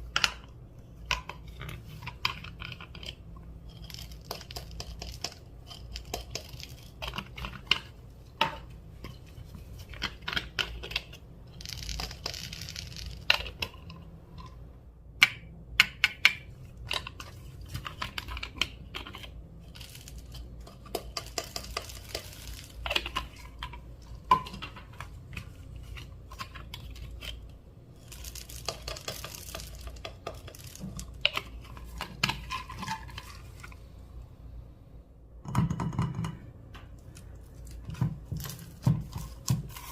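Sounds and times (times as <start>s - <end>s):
slime crackling: 9.6s - 13.8s, 19.5s - 24.3s, 25.0s - 33.7s.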